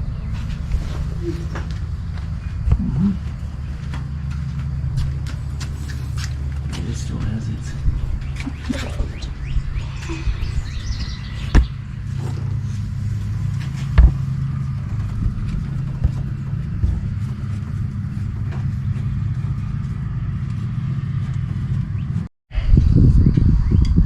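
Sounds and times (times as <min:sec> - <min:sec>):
vehicle engine idling: 0:00.0 - 0:22.3
sharp knocks: 0:11.5 - 0:11.9, 0:13.9 - 0:14.4.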